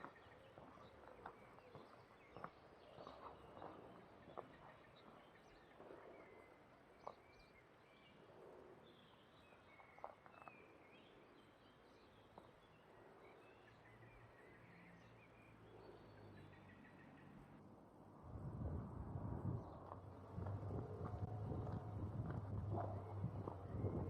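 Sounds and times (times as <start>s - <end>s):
small birds chirping: 0.0s - 17.6s.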